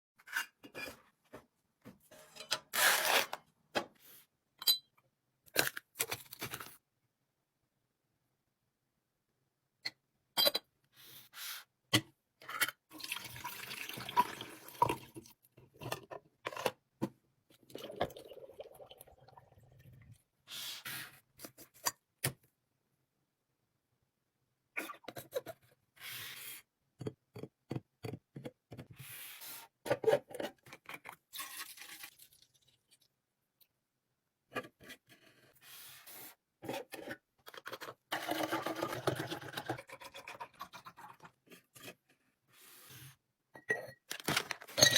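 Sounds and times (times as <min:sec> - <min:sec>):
items being poured: 0:13.0 - 0:15.4, 0:31.3 - 0:33.1, 0:37.6 - 0:41.2
plastic containers clattering: 0:44.1 - 0:44.9.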